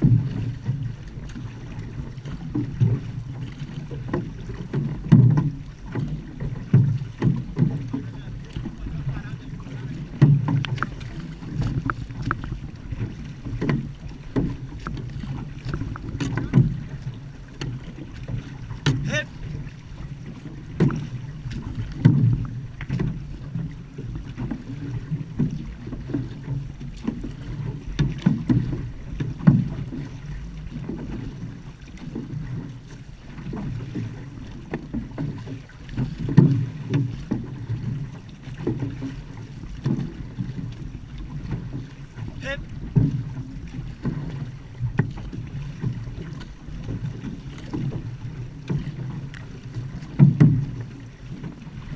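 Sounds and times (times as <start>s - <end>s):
paddles splashing in water: 0.0s - 51.9s
water washing against hull: 0.0s - 51.9s.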